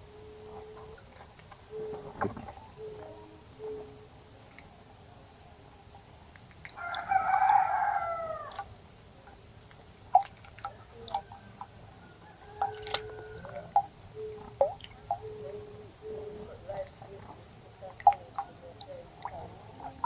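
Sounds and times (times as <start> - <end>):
rooster crowing: 6.8 - 8.6, 11.2 - 13.7.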